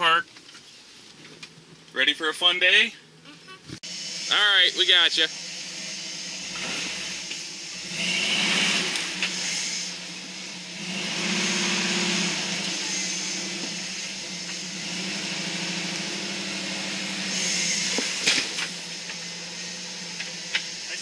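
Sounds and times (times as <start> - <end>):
car engine revving: 3.8 - 21.0.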